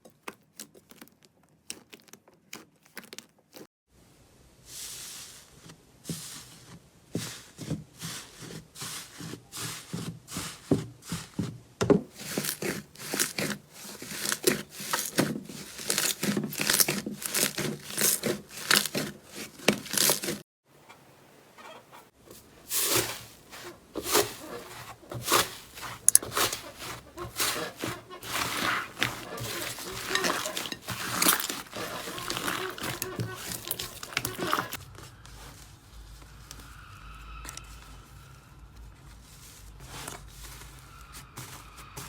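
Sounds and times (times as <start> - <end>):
slime crackling and popping: 0.2 - 3.6.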